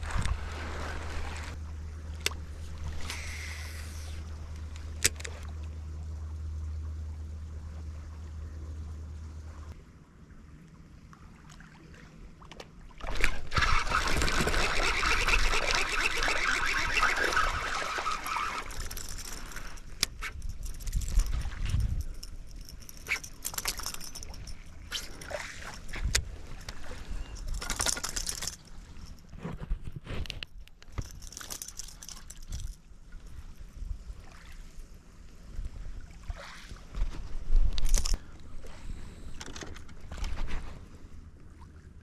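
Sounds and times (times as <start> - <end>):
lake water sloshing: 11.1 - 29.5.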